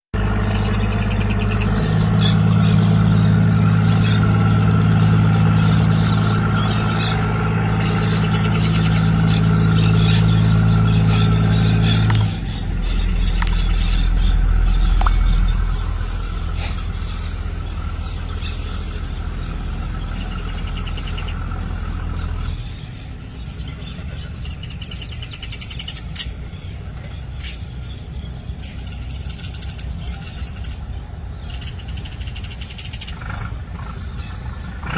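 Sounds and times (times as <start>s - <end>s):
low steady drone: 0.2s - 34.9s.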